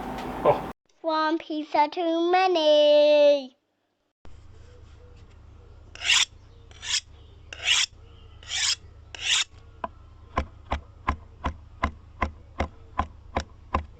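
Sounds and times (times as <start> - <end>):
rasping scraping strokes: 5.9 - 9.6.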